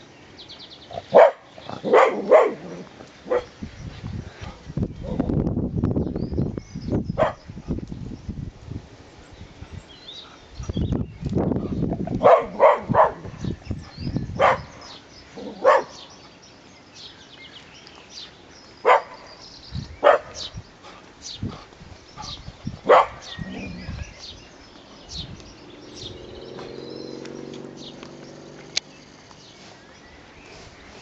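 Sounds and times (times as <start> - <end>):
dog barking: 1.1 - 3.5, 7.2 - 7.4, 12.2 - 13.3, 14.4 - 14.8, 15.4 - 16.0, 18.8 - 19.2, 20.0 - 20.5, 22.2 - 23.4.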